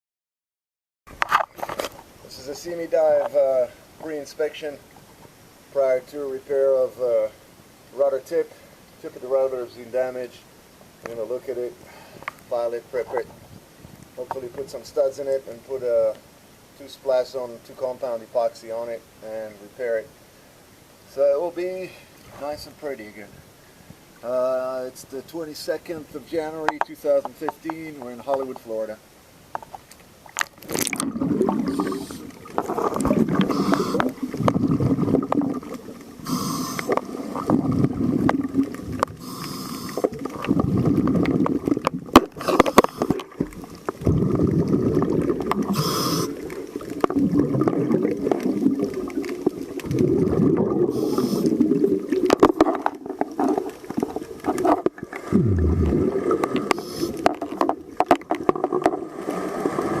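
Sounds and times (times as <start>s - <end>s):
bubbles gurgling underwater: 30.4s - 39.2s, 40.1s - 60.0s
regulator hissing: 36.2s - 37.0s, 45.7s - 46.4s, 50.9s - 51.6s.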